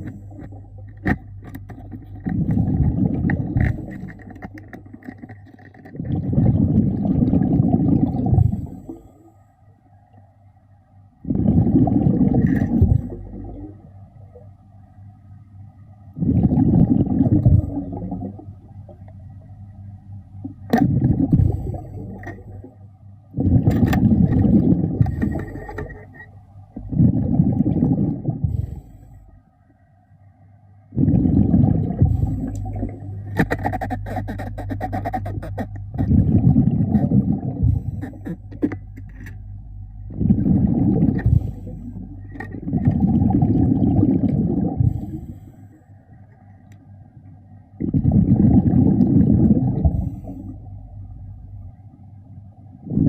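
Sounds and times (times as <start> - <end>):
underwater exhaled bubbles: 0.0 - 9.2, 11.2 - 14.4, 16.1 - 19.2, 20.4 - 29.0, 30.9 - 45.6, 47.8 - 50.8, 52.8 - 53.0
steady low hum: 0.0 - 53.0.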